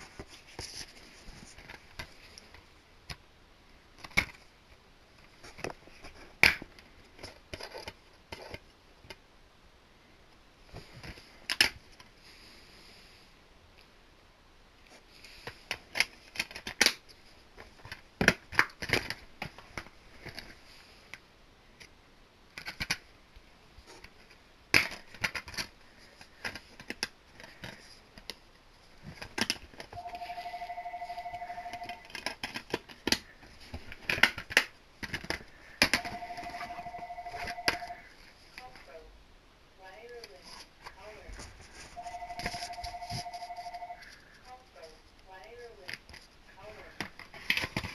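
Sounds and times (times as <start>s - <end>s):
plastic cases clicking and rattling: 22.5s - 23.1s, 23.8s - 28.4s, 29.0s - 38.0s, 46.9s - 47.9s.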